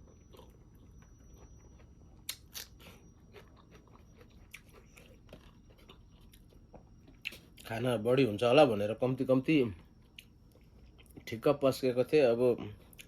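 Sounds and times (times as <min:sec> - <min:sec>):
close-up chewing: 0:00.0 - 0:07.8
crunching bone: 0:00.1 - 0:07.8.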